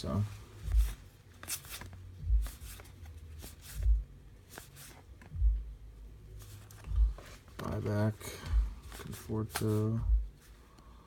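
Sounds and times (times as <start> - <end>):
trading cards rustling: 0.0 - 5.4, 6.4 - 10.8
dull low thump: 6.9 - 7.2.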